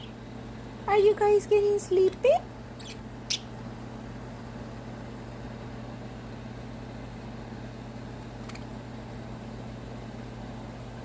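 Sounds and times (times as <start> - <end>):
low mechanical hum: 0.0 - 11.0
faint budgie chirp: 2.8 - 3.5.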